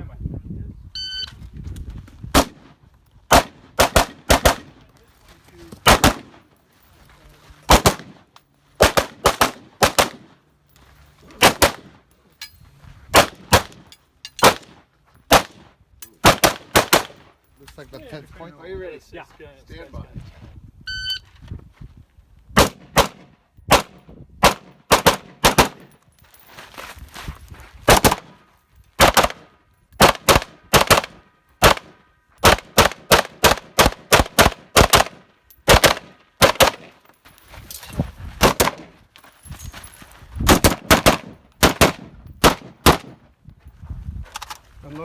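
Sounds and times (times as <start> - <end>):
rifle firing rapid shots: 3.3 - 4.8, 5.8 - 6.4, 7.7 - 8.2, 8.8 - 10.3, 11.4 - 11.9, 16.2 - 17.2, 22.6 - 25.9, 29.0 - 29.4, 30.0 - 36.9, 38.4 - 38.9, 40.5 - 43.2.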